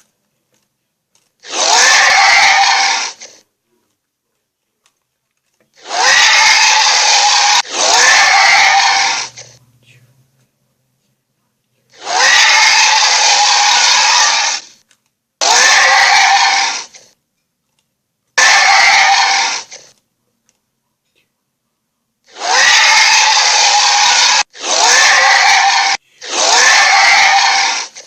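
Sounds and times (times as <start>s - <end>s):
monster screeches: 1.4s - 3.4s, 5.8s - 9.6s, 12.0s - 14.8s, 15.4s - 17.1s, 18.4s - 20.0s, 22.3s - 28.0s.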